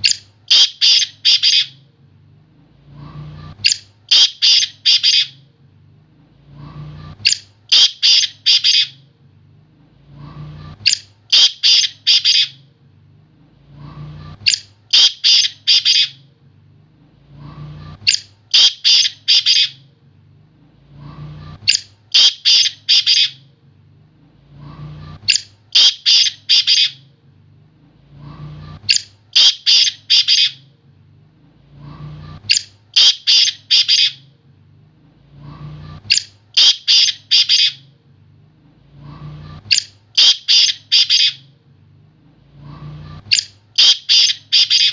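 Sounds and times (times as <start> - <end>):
francolin harsh grating calls: 0.0 - 1.8, 3.4 - 5.4, 7.2 - 9.0, 10.9 - 12.6, 14.5 - 16.2, 18.1 - 19.8, 21.7 - 23.4, 25.3 - 27.0, 28.9 - 30.6, 32.5 - 34.2, 36.1 - 37.8, 39.7 - 41.4, 43.3 - 44.9.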